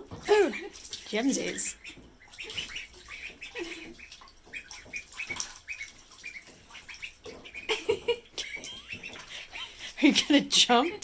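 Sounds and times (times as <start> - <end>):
ducklings peeping: 0.0 - 11.0
water splashing in a bathtub: 0.0 - 11.0.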